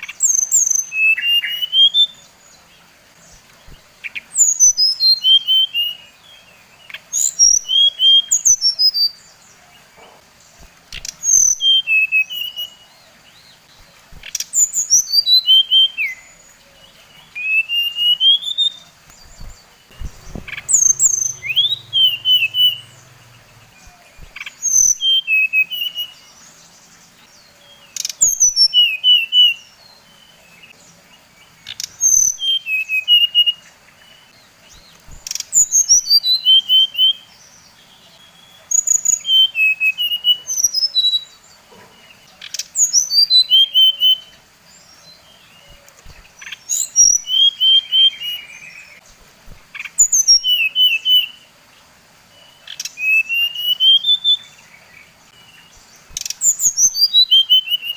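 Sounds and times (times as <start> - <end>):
flycatcher singing: 10.4 - 12.9, 13.5 - 27.2, 38.1 - 51.4, 52.5 - 57.9.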